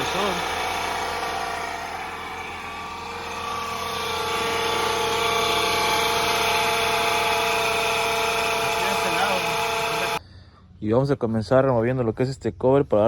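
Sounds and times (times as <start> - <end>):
car engine running: 0.0 - 10.2
compressor whining: 0.0 - 10.2.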